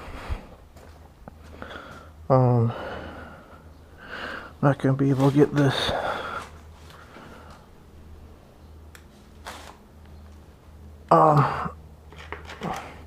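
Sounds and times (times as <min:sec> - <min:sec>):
steady low hum: 0:00.0 - 0:13.0
man humming or grunting: 0:11.1 - 0:11.8
man sighing: 0:11.1 - 0:11.8.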